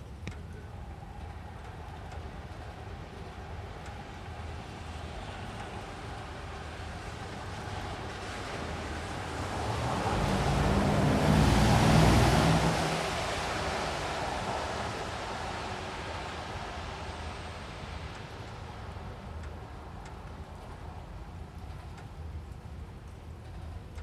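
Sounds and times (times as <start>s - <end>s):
light rain hissing: 0.9s - 21.2s
vehicle passing: 7.4s - 18.2s.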